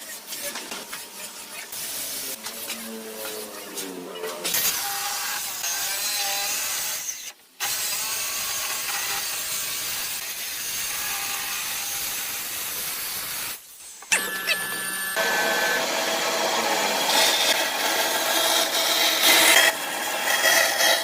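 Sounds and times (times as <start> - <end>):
power tool rasping wood: 15.2 - 21.0.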